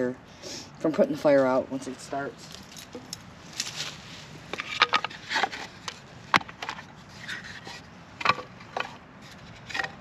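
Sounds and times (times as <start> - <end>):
wood scraping: 2.4 - 10.0
firewood knocking and clattering: 4.5 - 6.9, 8.2 - 9.0.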